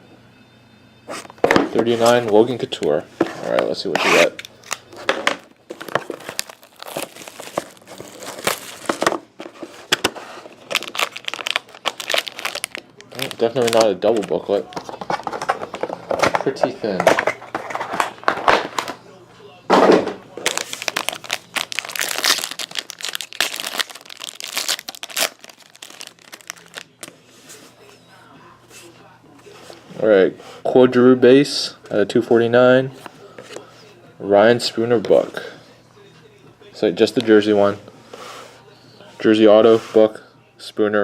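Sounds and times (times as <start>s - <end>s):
packaging tearing and crinkling: 5.7s - 9.2s, 10.5s - 15.6s, 20.4s - 27.1s.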